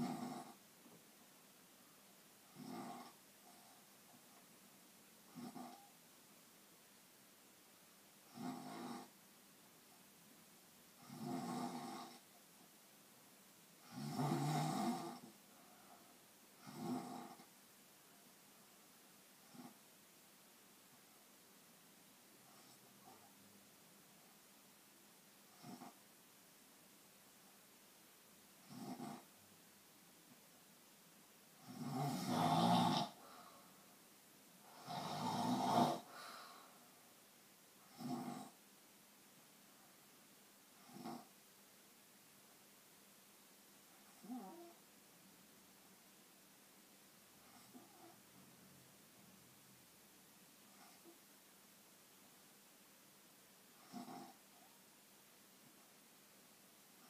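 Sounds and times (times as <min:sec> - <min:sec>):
snoring: 0:00.0 - 0:00.6, 0:02.5 - 0:03.7, 0:05.3 - 0:05.9, 0:08.3 - 0:09.1, 0:11.0 - 0:12.3, 0:13.8 - 0:15.4, 0:16.6 - 0:17.5, 0:19.4 - 0:19.8, 0:22.5 - 0:23.2, 0:25.5 - 0:26.0, 0:28.6 - 0:29.3, 0:31.6 - 0:33.5, 0:34.6 - 0:36.3, 0:37.8 - 0:38.6, 0:40.8 - 0:41.3, 0:44.1 - 0:44.8, 0:47.4 - 0:48.2, 0:53.8 - 0:54.5
person snoring: 0:11.0 - 0:12.2, 0:13.8 - 0:15.3, 0:31.6 - 0:33.6, 0:34.6 - 0:36.6.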